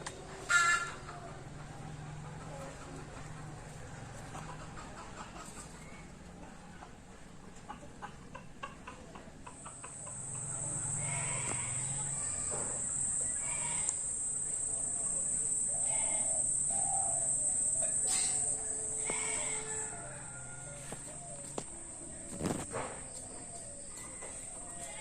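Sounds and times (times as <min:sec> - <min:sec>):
high-pitched insect trill: 0:09.6 - 0:22.7.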